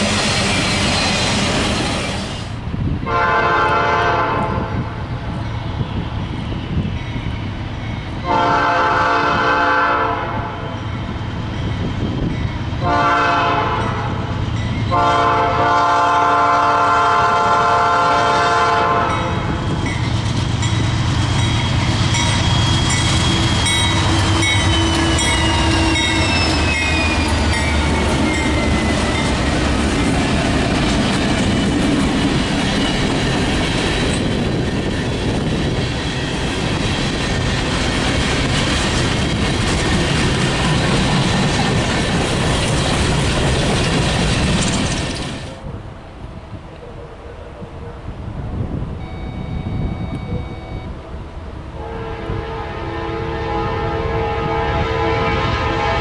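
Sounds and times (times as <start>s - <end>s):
train rumble and wheel clatter: 0.0s - 56.0s
train air horn blasts: 3.0s - 5.0s, 8.2s - 10.8s, 12.8s - 14.3s, 14.9s - 19.7s, 23.2s - 28.9s, 51.8s - 56.0s.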